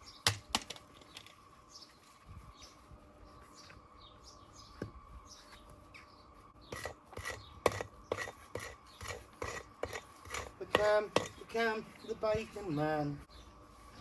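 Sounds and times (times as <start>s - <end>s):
masonry tool scraping and knocking: 6.7s - 11.6s.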